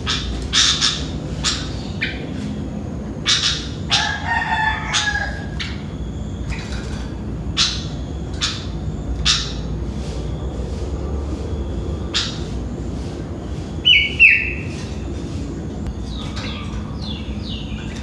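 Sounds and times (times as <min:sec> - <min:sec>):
bird giving sharp calls: 0:00.0 - 0:10.2, 0:13.8 - 0:18.0
rooster crowing: 0:03.9 - 0:06.0.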